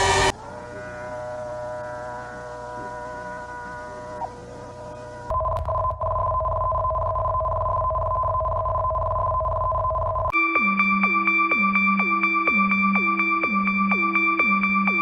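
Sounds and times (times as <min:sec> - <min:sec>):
two-note alert tone: 0:00.0 - 0:05.3
chord of electronic tones: 0:00.0 - 0:06.6
low hum: 0:00.0 - 0:10.3.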